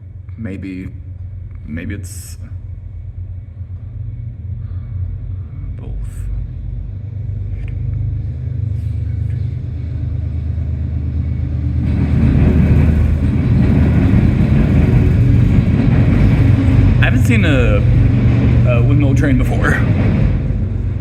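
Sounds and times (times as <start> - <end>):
diesel locomotive rumble: 0.0 - 21.0
train wheels rushing on rail: 6.3 - 21.0.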